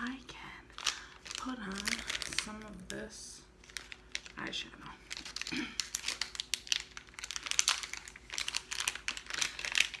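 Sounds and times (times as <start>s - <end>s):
plastic packaging crinkling: 0.0s - 10.0s.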